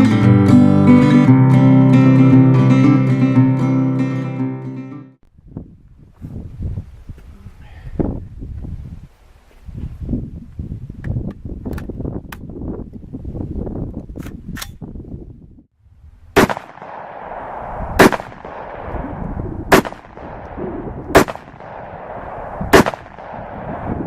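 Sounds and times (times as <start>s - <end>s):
wind on microphone: 5.3s - 24.0s
rifle shots with echo: 16.4s - 24.0s.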